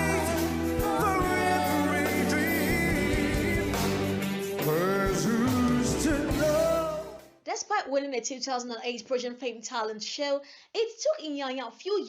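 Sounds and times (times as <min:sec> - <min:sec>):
song with sung vocals: 0:00.0 - 0:07.4.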